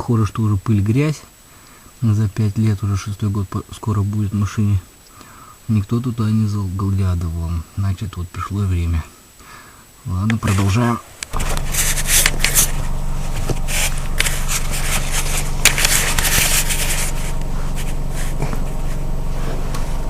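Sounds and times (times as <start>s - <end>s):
steady low hum: 0.2s - 20.0s
hands scraping and clicking: 10.3s - 12.8s, 13.4s - 18.7s.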